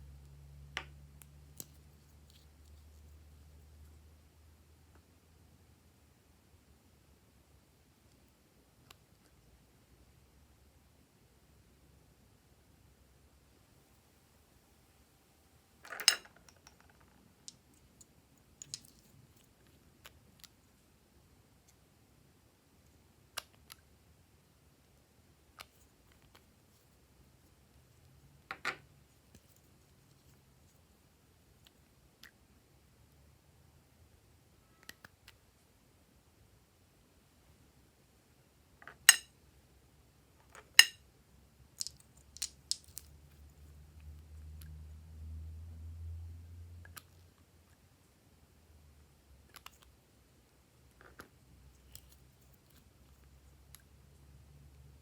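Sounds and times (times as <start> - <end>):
small objects rattling: 18.6 - 19.4.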